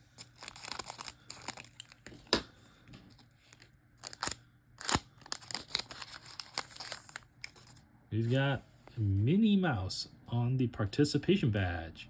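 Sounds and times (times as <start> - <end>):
card pack wrapper crinkling: 0.0 - 2.4, 3.1 - 7.8
wrapper sharp crackles: 0.1 - 2.2, 3.1 - 7.8.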